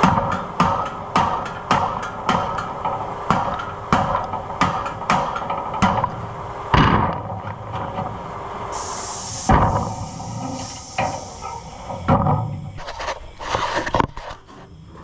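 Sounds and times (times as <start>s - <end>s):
hammer blows on metal: 8.8s - 12.8s.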